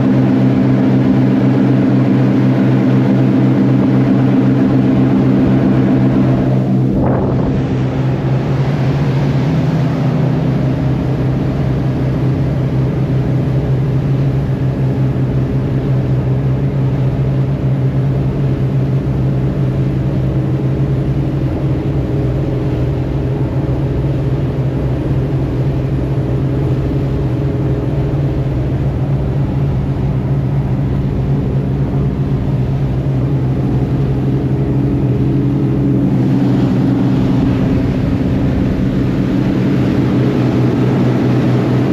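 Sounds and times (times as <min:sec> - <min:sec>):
boat engine drone: 0:00.0 - 0:41.9
water noise: 0:00.0 - 0:41.9.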